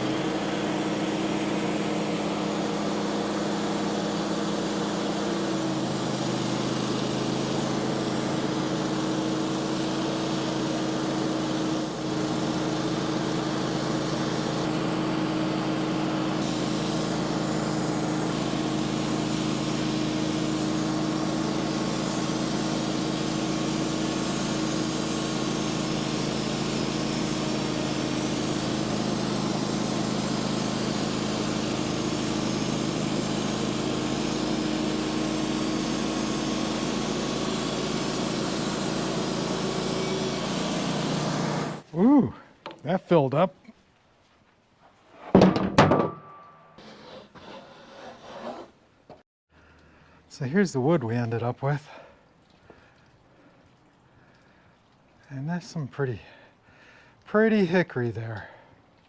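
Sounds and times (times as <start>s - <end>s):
band blade sawing wood: 0.0s - 41.9s, 46.7s - 49.2s
sawmill engine running: 0.0s - 43.4s.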